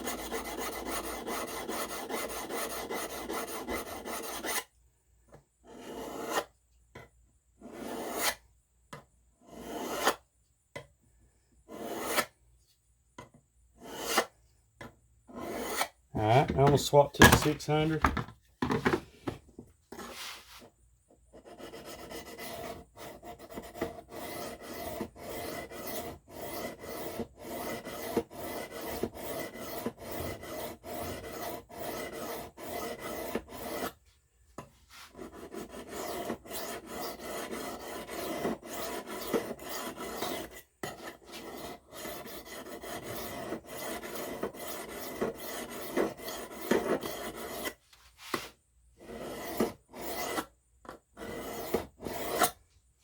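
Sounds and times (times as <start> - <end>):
knife rasping on sharpening stone: 5.7 - 6.5, 7.6 - 8.4, 9.5 - 10.2, 11.7 - 12.3, 13.8 - 14.3, 15.3 - 15.9, 34.9 - 50.5, 51.2 - 52.6.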